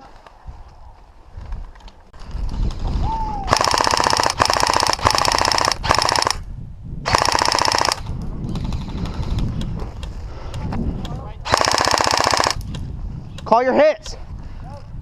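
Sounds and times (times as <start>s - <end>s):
airsoft gun full-auto bursts: 3.5s - 6.4s, 7.1s - 9.0s, 11.5s - 12.6s.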